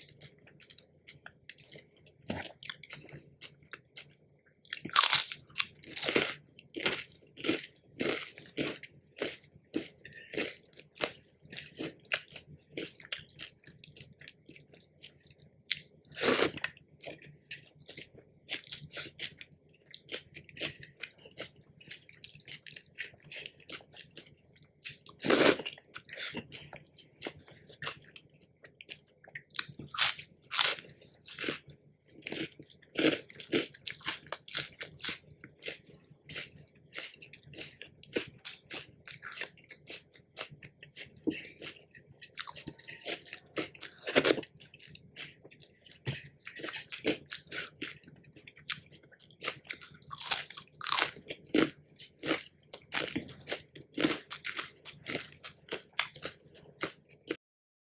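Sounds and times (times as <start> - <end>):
person chewing crunchy food: 0.0 - 57.4
loud crunchy bites: 4.8 - 9.3, 29.9 - 31.6, 49.8 - 56.9.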